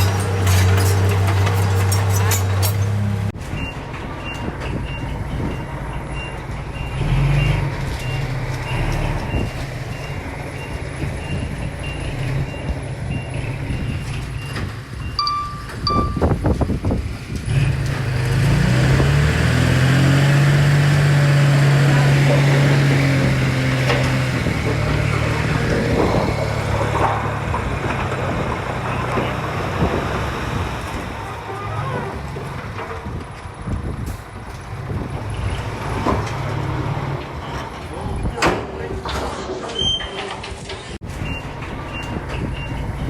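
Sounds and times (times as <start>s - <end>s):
heavy machinery engine: 0.0s - 43.0s
reversing alarm beeping: 3.6s - 16.5s
engine revving: 6.8s - 9.5s, 17.4s - 31.1s
short low beeps: 15.0s - 16.4s.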